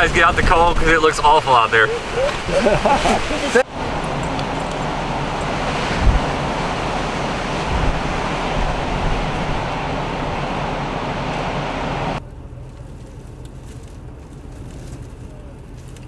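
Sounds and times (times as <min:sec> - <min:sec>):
strong blizzard wind: 0:00.0 - 0:12.2
wind buffeting microphone: 0:00.0 - 0:12.2
low rumble: 0:01.9 - 0:12.2.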